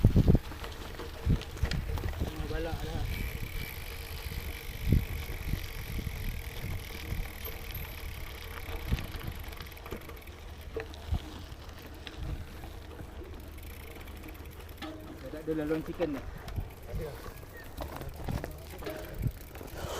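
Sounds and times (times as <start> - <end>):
wind on microphone: 0.0 - 0.6, 1.2 - 9.4
bike tyres rumbling on gravel: 0.0 - 19.9
bike knocking over bumps: 6.4 - 19.9.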